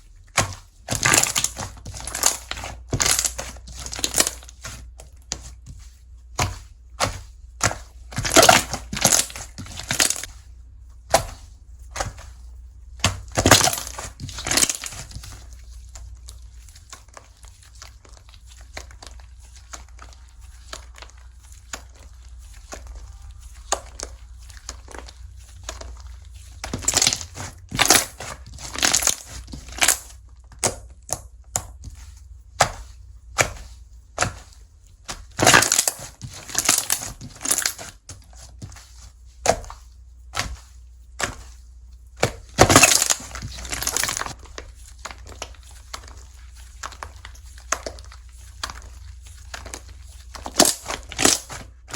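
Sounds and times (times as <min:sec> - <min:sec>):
low steady hum: 0:00.0 - 0:51.9
slime squishing: 0:00.0 - 0:51.9
slime crackling and popping: 0:00.3 - 0:05.0, 0:06.3 - 0:10.3, 0:13.0 - 0:15.4, 0:26.6 - 0:31.8, 0:35.1 - 0:38.0, 0:42.2 - 0:51.9.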